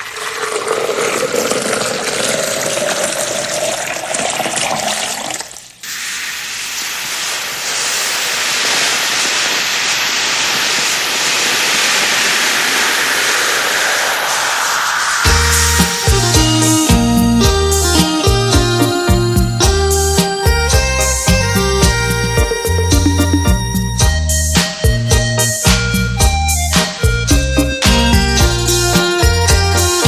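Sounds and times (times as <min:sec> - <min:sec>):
loud rushing hissing noise: 0:05.8 - 0:23.6
rising whistling tone: 0:11.7 - 0:17.5.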